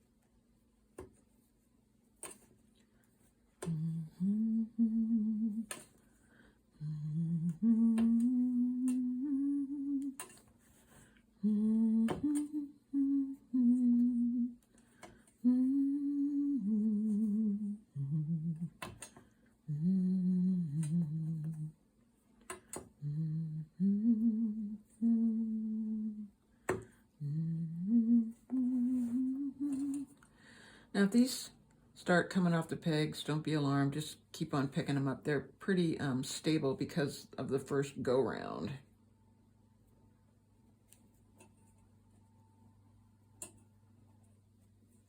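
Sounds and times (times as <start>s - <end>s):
woman humming a tune: 3.6s - 5.9s, 6.8s - 10.4s, 11.4s - 14.6s, 15.4s - 19.0s, 19.6s - 21.8s, 22.8s - 26.4s, 27.2s - 30.2s.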